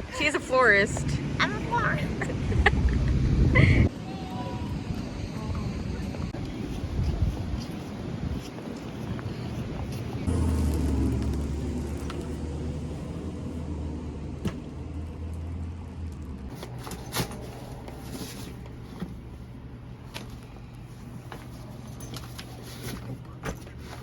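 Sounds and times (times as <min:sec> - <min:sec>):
low vehicle rumble: 0:02.0 - 0:21.2.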